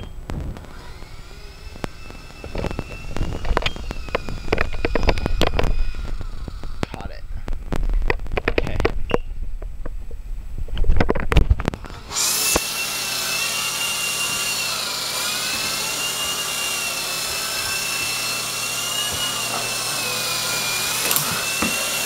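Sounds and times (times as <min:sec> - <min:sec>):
toy helicopter rotor whine: 0:00.7 - 0:06.8, 0:11.8 - 0:22.0.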